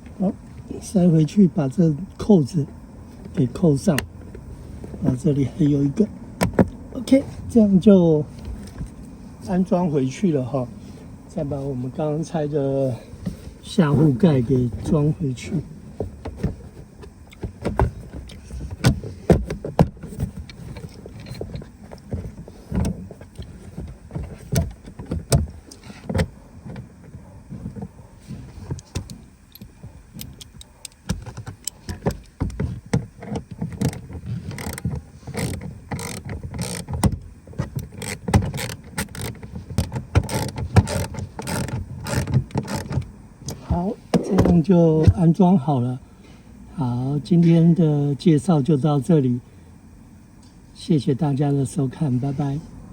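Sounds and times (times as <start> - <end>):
plastic panel clicks and rattles: 6.4 - 6.8, 28.6 - 43.6.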